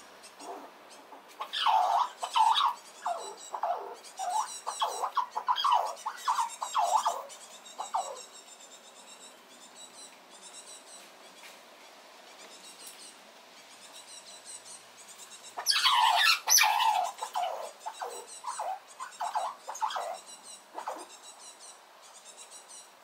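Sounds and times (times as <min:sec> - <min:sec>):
squirrel squealing: 0:01.4 - 0:08.3, 0:15.6 - 0:21.6.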